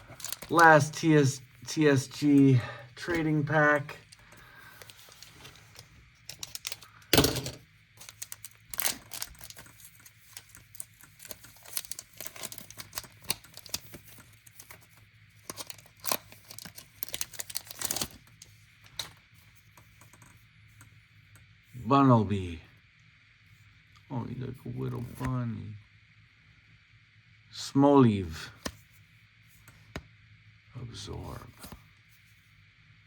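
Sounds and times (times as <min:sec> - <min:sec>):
foil wrapper tearing and crinkling: 0:00.0 - 0:00.9, 0:04.0 - 0:07.0, 0:08.0 - 0:19.1.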